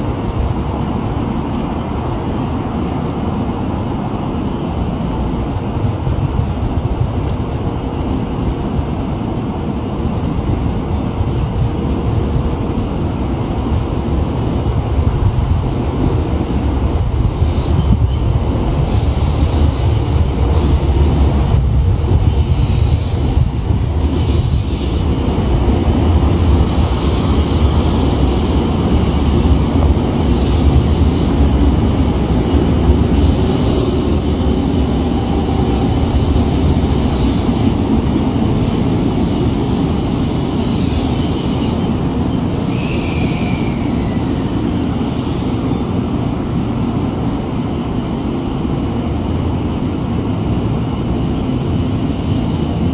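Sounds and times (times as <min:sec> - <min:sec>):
train rumbling on tracks: 0:00.0 - 0:52.9
short high squeal: 0:41.4 - 0:44.3.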